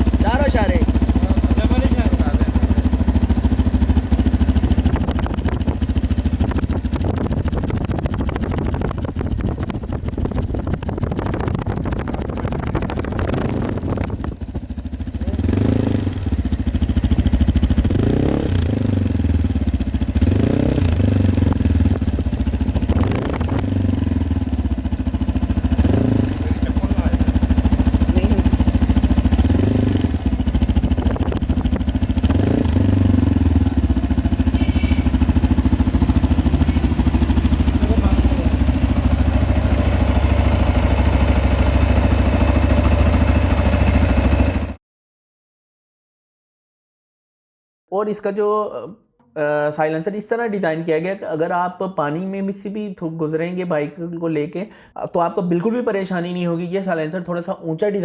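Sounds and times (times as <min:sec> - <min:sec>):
motorcycle engine idling and revving: 0:00.0 - 0:44.8.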